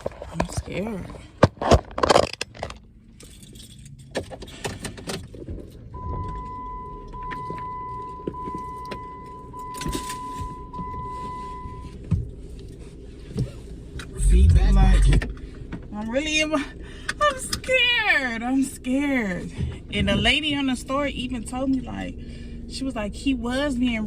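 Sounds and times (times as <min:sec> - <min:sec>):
keys jangling: 0:03.1 - 0:04.9
car warning chime: 0:06.0 - 0:12.0.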